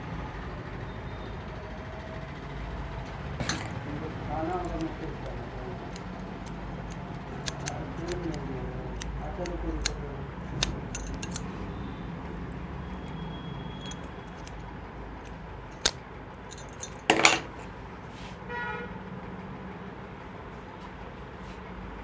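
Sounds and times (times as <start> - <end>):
metal tools clicking and clinking: 3.4 - 11.5, 13.8 - 14.6, 15.2 - 17.8.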